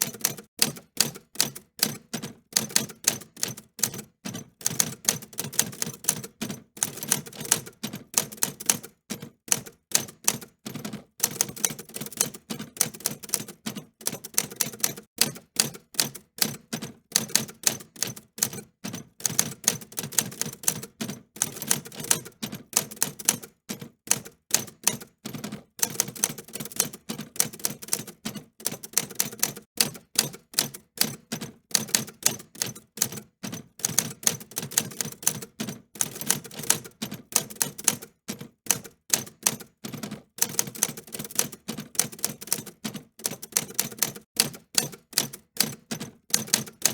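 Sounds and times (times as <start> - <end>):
typewriter key clicks: 38.7 - 46.9.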